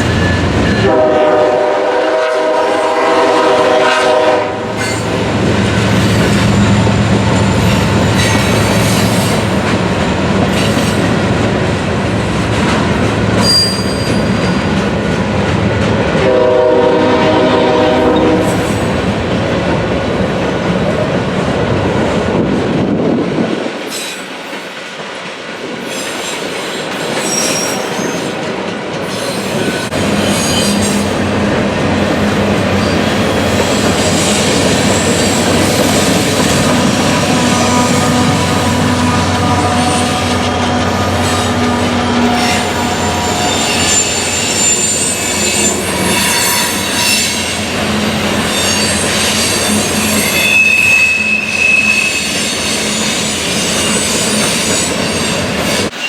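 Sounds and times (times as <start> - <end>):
train air horn blasts: 0.8 - 5.1, 16.2 - 18.7, 34.0 - 47.5
rail clatter: 4.1 - 16.6, 17.6 - 50.5
high wheel squeals: 13.4 - 14.7, 27.2 - 28.4, 32.8 - 56.0
locomotive engines droning: 29.1 - 52.7.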